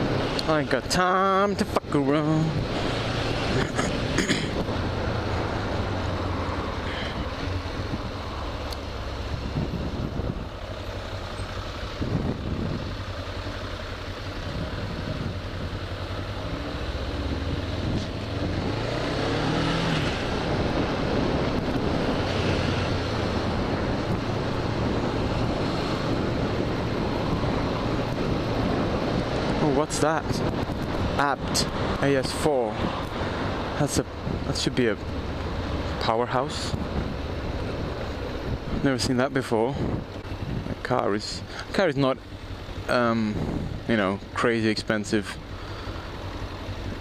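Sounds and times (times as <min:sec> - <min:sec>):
road noise: 0:00.0 - 0:47.0
motorcycle engine running: 0:02.2 - 0:29.6, 0:39.7 - 0:44.6, 0:45.2 - 0:47.0
wind noise: 0:02.5 - 0:08.4, 0:09.2 - 0:10.7, 0:11.8 - 0:13.1, 0:14.3 - 0:41.1, 0:43.0 - 0:44.3.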